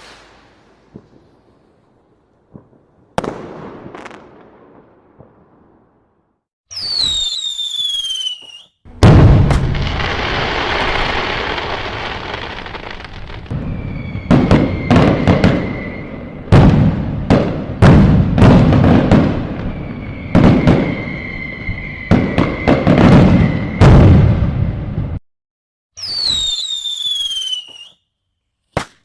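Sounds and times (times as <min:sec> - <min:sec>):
fireworks bangs with crackling: 0:00.0 - 0:06.0, 0:06.7 - 0:25.2, 0:26.0 - 0:27.9
high whistle: 0:06.7 - 0:08.8, 0:13.5 - 0:16.5, 0:19.5 - 0:24.1, 0:26.0 - 0:28.0.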